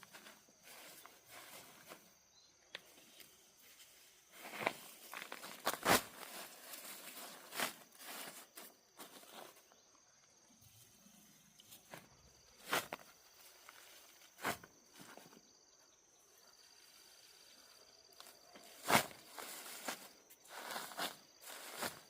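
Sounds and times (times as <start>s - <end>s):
dry plants rustling and crunching: 0.0s - 2.2s, 2.8s - 9.8s, 11.6s - 15.5s, 16.8s - 22.0s
footsteps: 18.2s - 22.0s.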